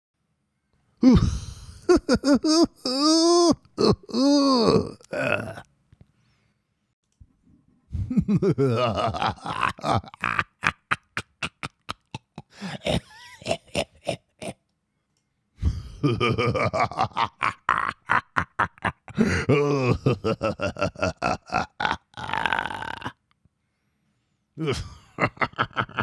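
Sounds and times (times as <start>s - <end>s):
man's guttural evil laugh: 1.0s - 5.6s, 8.0s - 14.6s, 15.7s - 23.1s, 24.6s - 26.0s.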